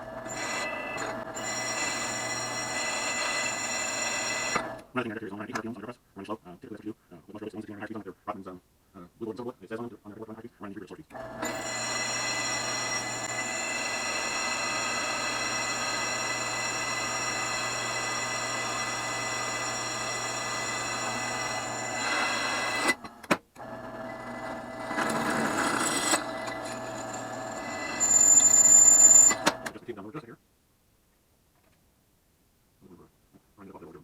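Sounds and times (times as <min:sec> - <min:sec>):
drill press motor hum: 0:00.0 - 0:04.8, 0:11.2 - 0:29.7
high-pitched squeal: 0:27.5 - 0:29.5.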